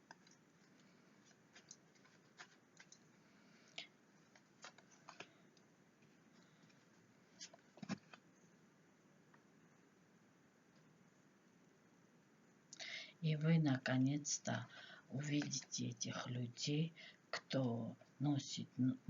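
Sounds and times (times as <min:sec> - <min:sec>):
faint clicks and taps: 0:00.0 - 0:08.3.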